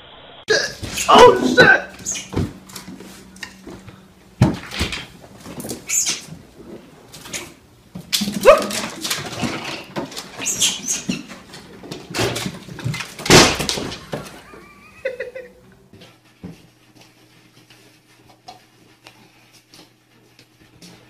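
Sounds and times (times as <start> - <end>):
animal crying: 0.5 - 2.4, 5.8 - 6.3, 8.4 - 9.0, 10.3 - 11.4
animal yelping: 0.5 - 2.4, 5.8 - 6.3, 8.4 - 9.6, 10.3 - 11.4.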